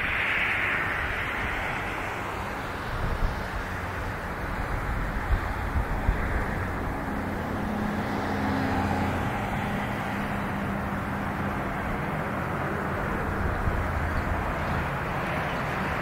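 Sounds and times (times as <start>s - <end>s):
jet engines rumbling: 0.0s - 16.0s.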